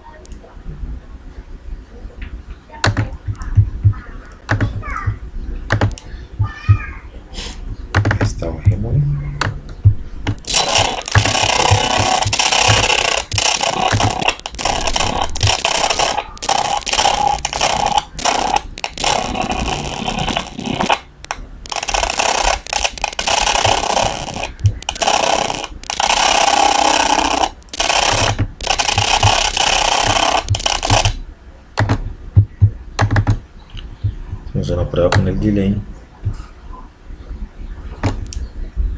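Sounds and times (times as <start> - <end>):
buzzy synthetic audio: 10.4 - 21.1, 21.7 - 31.2.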